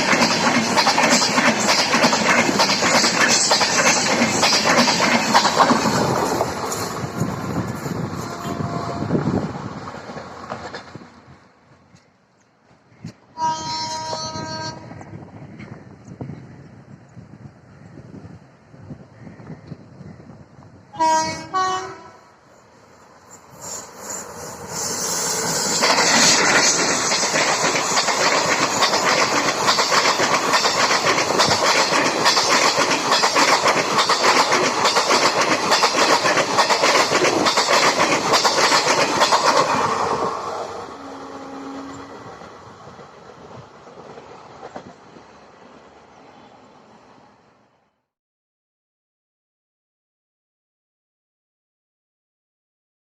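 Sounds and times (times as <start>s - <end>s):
train passing at speed: 0.0s - 48.1s
wheels clattering over rail joints: 25.6s - 40.3s.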